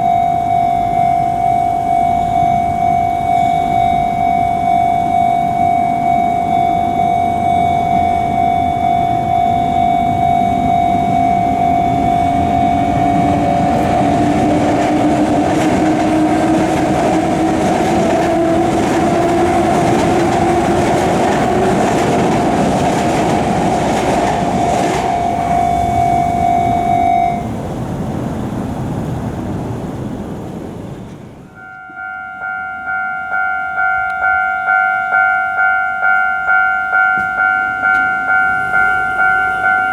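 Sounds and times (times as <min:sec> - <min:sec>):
level crossing bell ringing: 0:00.0 - 0:14.9, 0:16.8 - 0:27.4, 0:31.6 - 0:39.9
higher pitched crossing bell: 0:00.0 - 0:27.5, 0:31.5 - 0:39.9
rising hum: 0:00.0 - 0:27.9
train passing on rails: 0:00.0 - 0:39.9.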